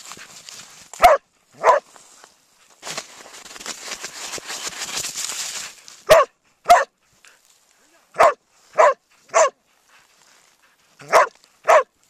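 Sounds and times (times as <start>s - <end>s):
scratching rustling noise: 0.0s - 6.3s, 8.5s - 11.8s
dog barking: 1.0s - 1.8s, 6.1s - 6.9s, 8.2s - 9.6s, 11.0s - 11.9s.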